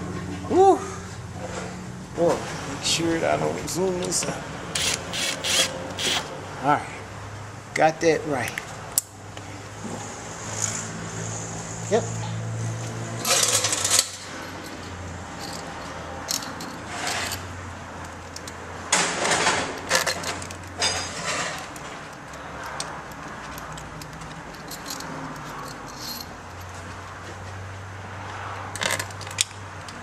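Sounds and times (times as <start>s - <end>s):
hand tools clinking on metal: 13.2s - 26.8s.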